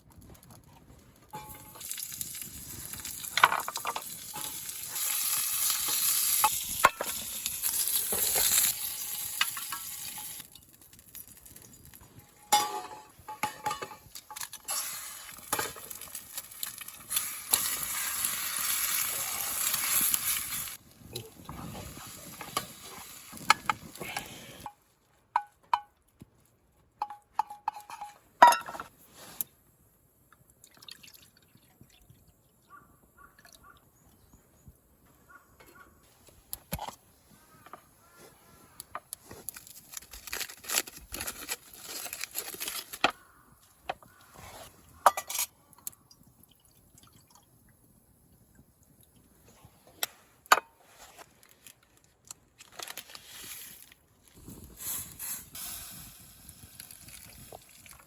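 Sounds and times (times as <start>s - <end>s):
food sizzling in a pan: 1.4s - 10.5s, 13.4s - 20.8s.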